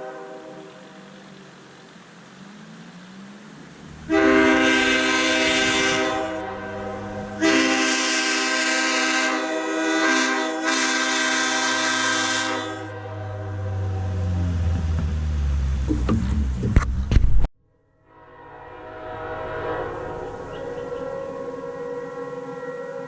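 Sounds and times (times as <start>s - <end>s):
air horn blasts: 0.0s - 0.7s, 4.0s - 13.9s
low engine rumble: 0.4s - 9.0s, 12.8s - 17.5s, 18.4s - 23.0s.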